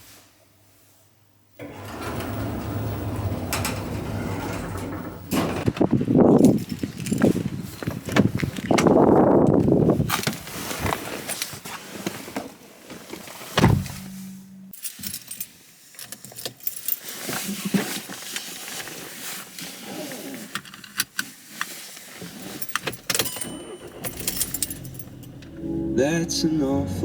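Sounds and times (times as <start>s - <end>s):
keys jangling: 6.2s - 8.7s, 14.7s - 17.1s, 22.4s - 25.6s
heavy thump: 13.6s - 14.4s.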